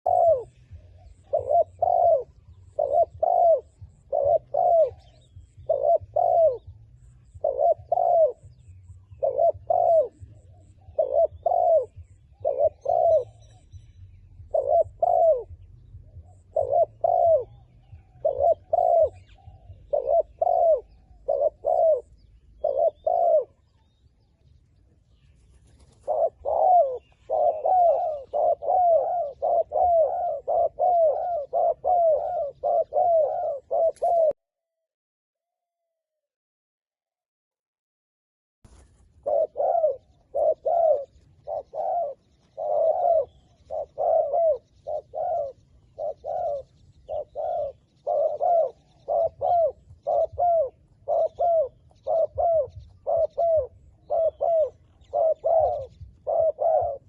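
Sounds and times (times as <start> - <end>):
dove cooing: 0.0 - 34.4, 38.7 - 57.0.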